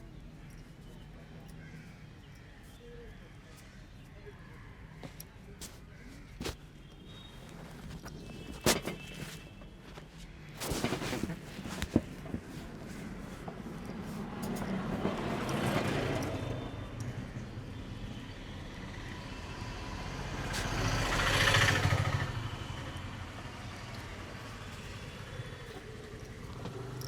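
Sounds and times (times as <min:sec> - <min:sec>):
road vehicles passing: 0:10.7 - 0:27.0.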